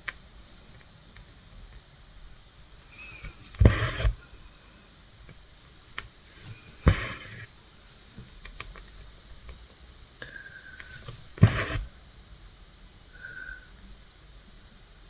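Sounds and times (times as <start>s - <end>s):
small clicks and rustles: 8.1s - 11.8s.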